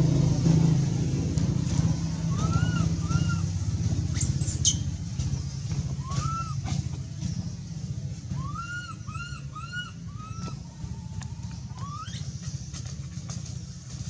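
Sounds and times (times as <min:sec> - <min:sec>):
engine droning: 0:00.0 - 0:14.0
baby monkey crying: 0:02.3 - 0:03.5, 0:06.0 - 0:06.6, 0:08.4 - 0:12.3.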